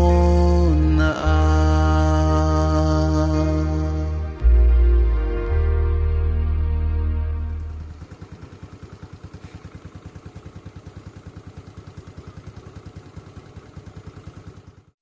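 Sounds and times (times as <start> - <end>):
small engine idling: 0.0 - 4.5, 7.5 - 15.0.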